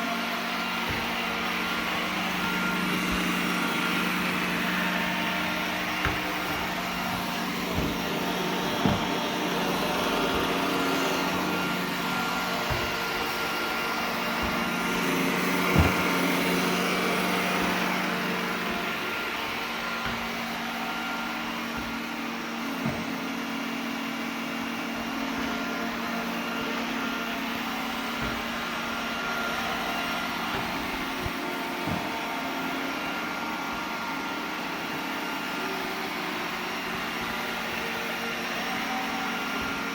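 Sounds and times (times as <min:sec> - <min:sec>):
robot vacuum hum: 0:00.0 - 0:39.9
short knocks: 0:00.8 - 0:23.3.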